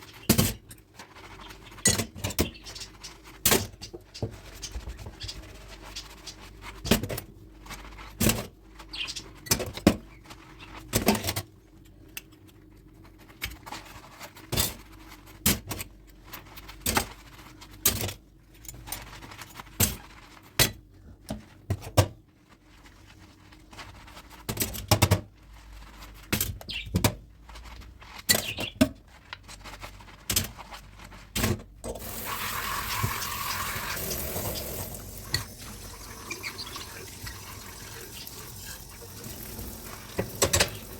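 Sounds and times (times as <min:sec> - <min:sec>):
tap running: 0:31.8 - 0:40.9
dishes clinking in sink: 0:31.9 - 0:40.9.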